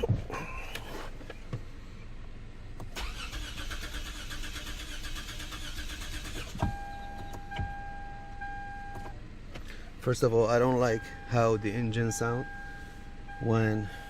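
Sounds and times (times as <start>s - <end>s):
car starter cranking: 2.8s - 7.8s
steady electronic beep: 6.7s - 9.0s, 10.5s - 14.0s.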